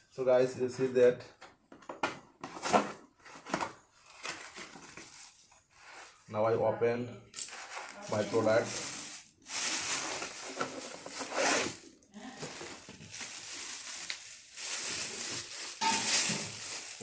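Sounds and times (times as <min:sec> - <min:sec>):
packaging tearing and crinkling: 0:07.4 - 0:17.0.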